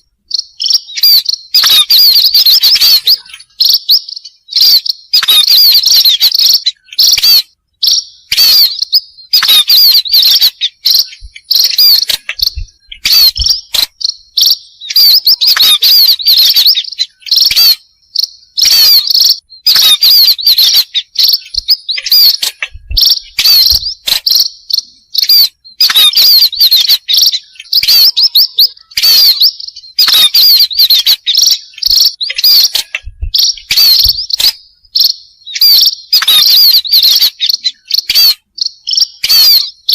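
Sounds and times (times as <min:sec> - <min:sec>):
flock of birds chirping: 0:00.0 - 0:39.9.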